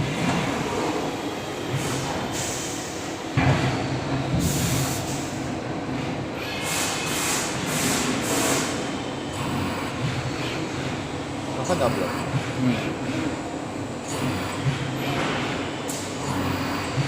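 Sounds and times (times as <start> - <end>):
milling machine drone: 9.1 - 17.0.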